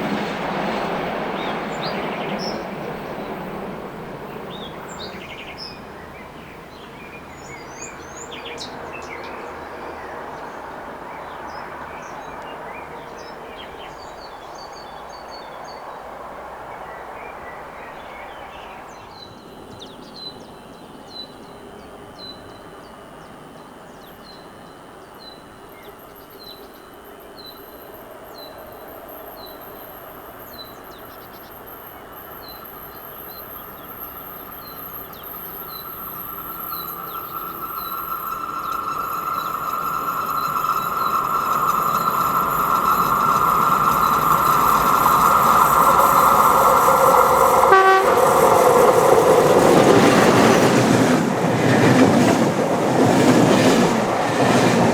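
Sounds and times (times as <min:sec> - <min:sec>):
train rumbling past: 0:00.0 - 0:54.9
birds chirping: 0:34.6 - 0:54.9.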